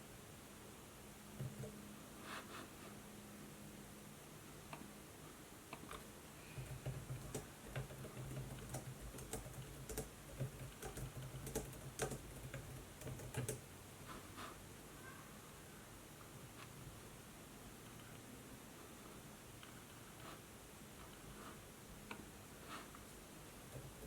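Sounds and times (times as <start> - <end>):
faint low hum: 0.0 - 24.0
typing on laptop keyboard: 6.6 - 13.6.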